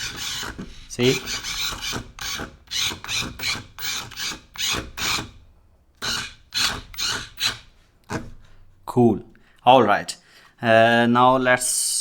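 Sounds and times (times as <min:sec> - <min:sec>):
wheels scrubbing rasp: 0:00.0 - 0:05.2
toy car motors whirring: 0:00.0 - 0:05.3, 0:06.0 - 0:07.7.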